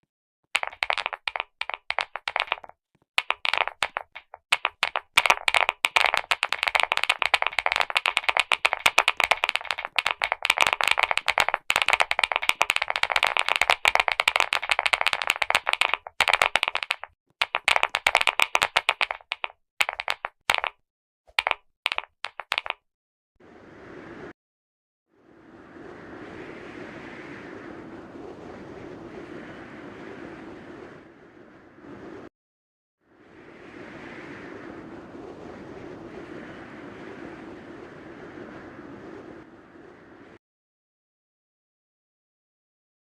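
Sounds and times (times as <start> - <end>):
clicky keyboard typing: 0.6 - 20.7, 21.3 - 22.8.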